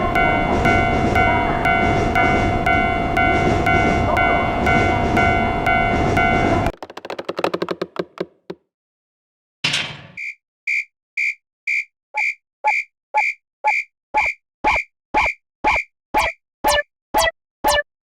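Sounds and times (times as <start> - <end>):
crossing bell electronic ding: 0.0 - 6.7.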